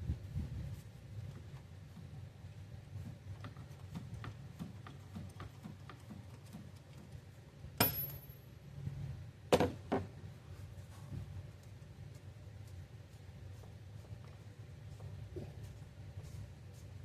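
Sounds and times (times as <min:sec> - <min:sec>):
sharp metal clanks: 0:07.8 - 0:08.4.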